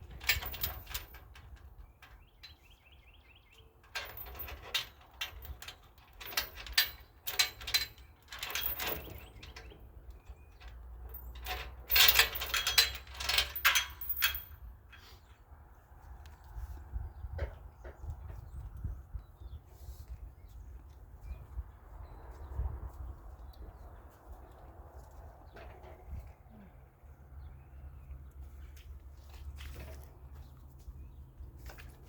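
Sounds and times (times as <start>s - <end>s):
low wind rumble: 4.2s - 28.1s.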